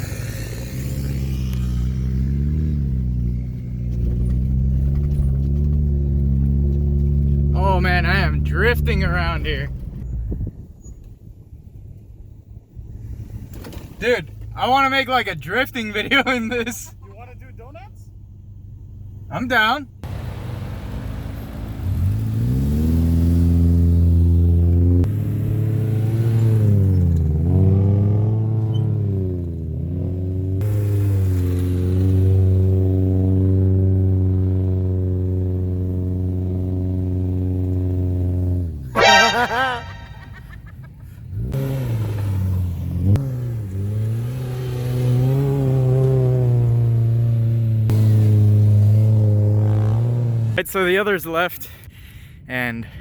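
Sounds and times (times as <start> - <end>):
car engine revving: 0.0 - 10.0, 19.3 - 40.6, 41.3 - 50.9
car engine revving hard: 41.3 - 50.6.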